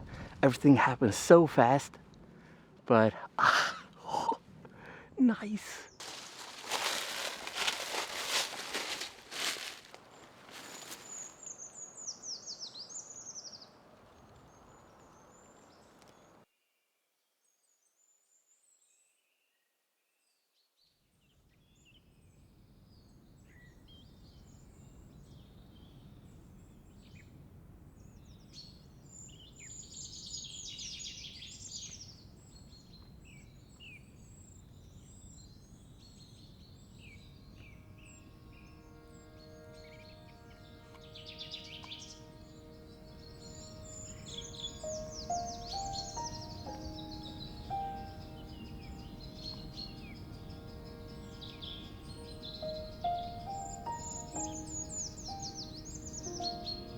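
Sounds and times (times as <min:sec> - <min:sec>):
birds singing and chirping: 0:05.2 - 0:09.9, 0:10.5 - 0:13.7, 0:28.1 - 0:56.9
soft music: 0:06.0 - 0:11.1, 0:37.3 - 0:56.9.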